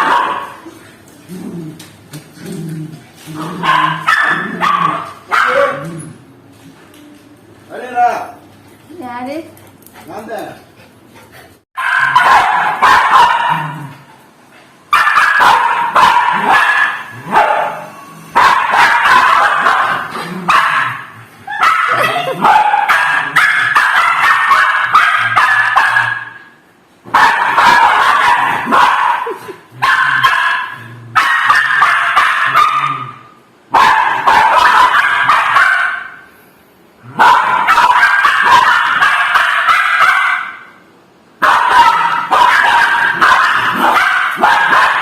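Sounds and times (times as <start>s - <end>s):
dogs barking and yipping: 0.0s - 0.8s, 3.2s - 5.9s, 11.8s - 13.9s, 14.9s - 33.2s, 33.8s - 36.2s, 37.2s - 40.8s, 41.4s - 45.0s.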